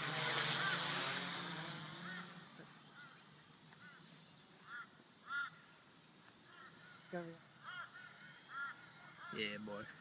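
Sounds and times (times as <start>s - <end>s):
drone propellers whining: 0.0s - 10.0s
short bird calls: 6.5s - 10.0s.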